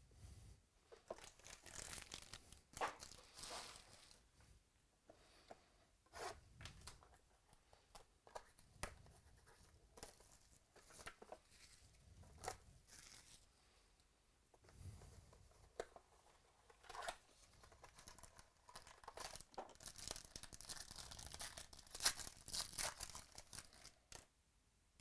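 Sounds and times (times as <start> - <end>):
packaging tearing and rustling: 1.1 - 4.2, 16.8 - 24.2.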